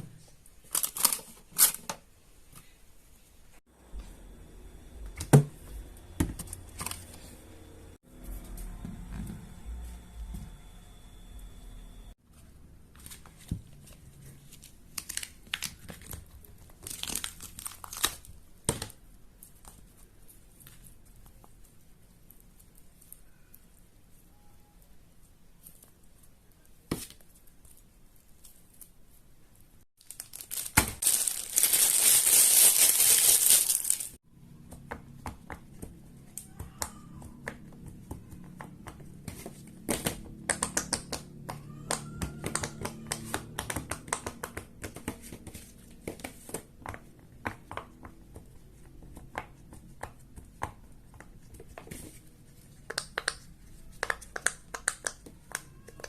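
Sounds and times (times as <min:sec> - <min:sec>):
crinkling rustling: 0:30.0 - 0:34.2.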